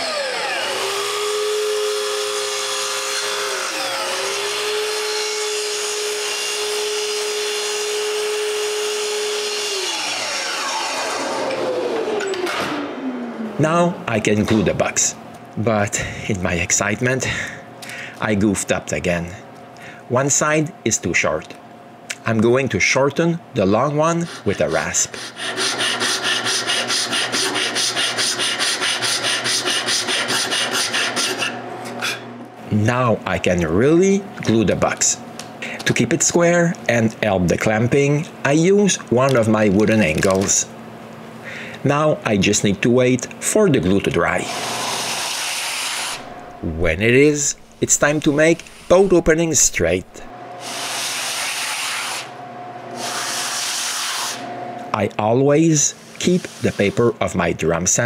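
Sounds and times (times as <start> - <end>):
power tool cutting wood: 0.0 - 13.9, 24.2 - 31.6, 44.3 - 46.5, 50.6 - 54.6
hand rasp filing wood: 24.2 - 31.6, 44.4 - 46.2, 50.6 - 52.3, 53.0 - 54.4.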